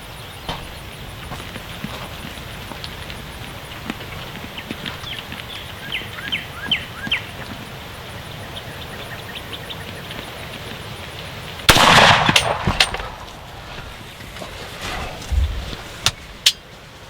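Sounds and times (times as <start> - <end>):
low outdoor rumble: 0.0 - 17.0
bird chirps: 4.4 - 11.0
rifle shot: 11.7 - 13.8.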